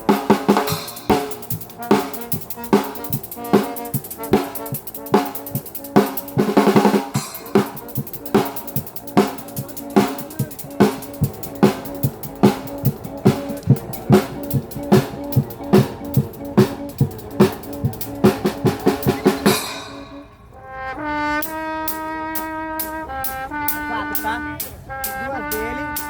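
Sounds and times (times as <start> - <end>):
drum-kit beat: 0.0 - 20.3
light ticking beat: 0.0 - 20.3
brass horns holding chords: 0.0 - 26.0.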